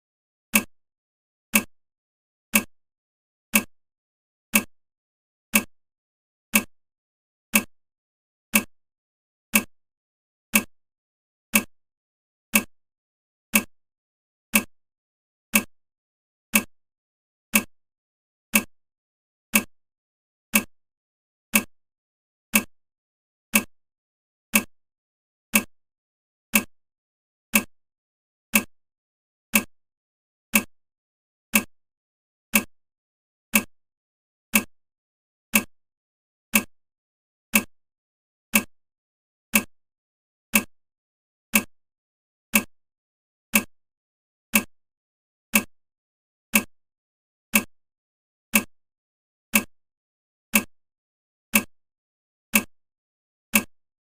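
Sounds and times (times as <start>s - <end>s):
timer ticking: 0.5s - 0.7s, 1.5s - 1.7s, 2.5s - 2.7s, 3.5s - 3.7s, 4.5s - 4.7s, 5.5s - 5.7s, 6.5s - 6.7s, 7.5s - 7.7s, 8.5s - 8.7s, 9.5s - 9.7s, 10.5s - 10.7s, 11.5s - 11.7s, 12.5s - 12.7s, 13.5s - 13.7s, 14.5s - 14.7s, 15.5s - 15.7s, 16.5s - 16.7s, 17.5s - 17.7s, 18.5s - 18.7s, 19.5s - 19.7s, 20.5s - 20.7s, 21.5s - 21.7s, 22.5s - 22.7s, 23.5s - 23.7s, 24.5s - 24.7s, 25.5s - 25.7s, 26.5s - 26.7s, 27.5s - 27.7s, 28.5s - 28.7s, 29.5s - 29.7s, 30.5s - 30.7s, 31.5s - 31.7s, 32.5s - 32.7s, 33.5s - 33.7s, 34.5s - 34.7s, 35.5s - 35.7s, 36.5s - 36.7s, 37.5s - 37.7s, 38.5s - 38.7s, 39.5s - 39.7s, 40.5s - 40.7s, 41.5s - 41.7s, 42.5s - 42.7s, 43.5s - 43.7s, 44.5s - 44.7s, 45.5s - 45.7s, 46.5s - 46.7s, 47.5s - 47.7s, 48.5s - 48.7s, 49.5s - 49.7s, 50.5s - 50.7s, 51.5s - 51.7s, 52.5s - 52.7s, 53.5s - 53.7s.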